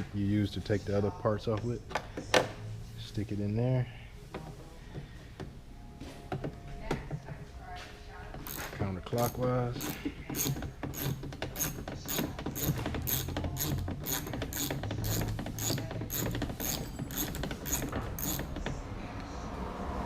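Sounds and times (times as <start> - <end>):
ratchet wrench clicking: 8.4 - 18.6.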